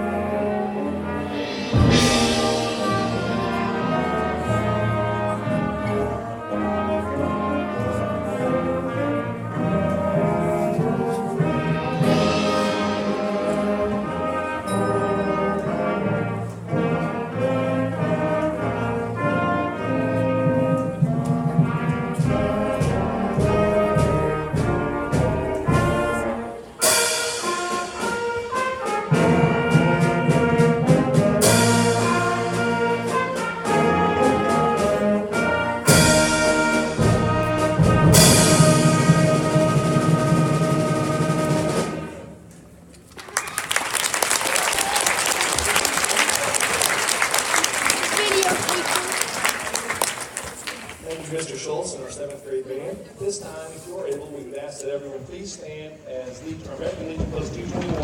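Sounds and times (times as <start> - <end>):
brass band music: 0.0 - 42.8, 43.7 - 52.0
bright cymbal crashes: 1.3 - 3.4.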